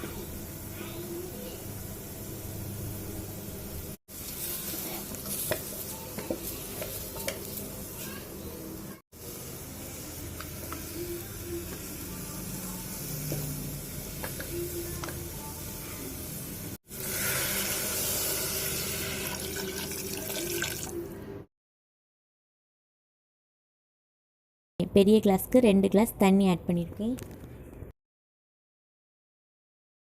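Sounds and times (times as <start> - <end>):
meat sizzling in oil: 1.3 - 8.0, 9.2 - 20.9.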